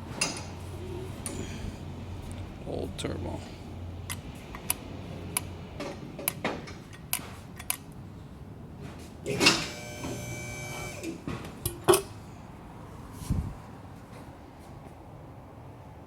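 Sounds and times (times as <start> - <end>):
scrape: 13.1 - 13.5.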